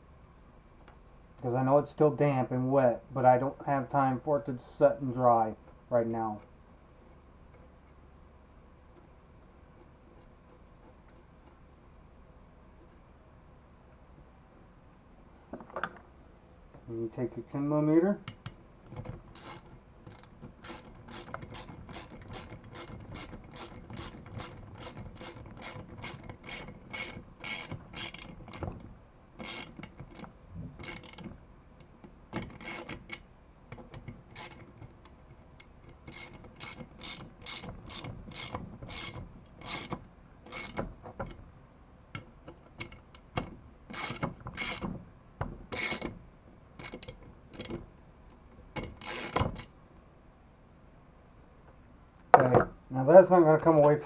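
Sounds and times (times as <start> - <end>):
ratchet wrench clicking: 19.0 - 28.3, 29.4 - 31.3, 36.1 - 39.9, 48.8 - 49.7.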